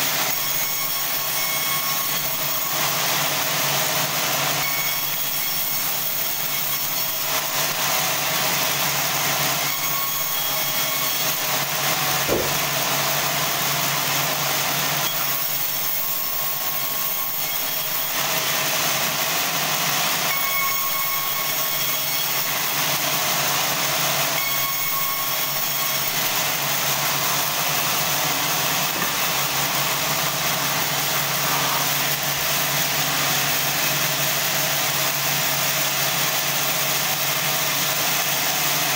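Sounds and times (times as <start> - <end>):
band sawmill sawing log: 0.0 - 38.9
sharp knock: 12.2 - 12.7.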